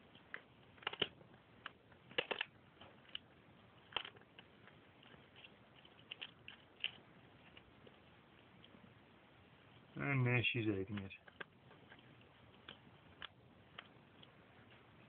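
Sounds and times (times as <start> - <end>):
cat crunching bones: 0.2 - 8.8.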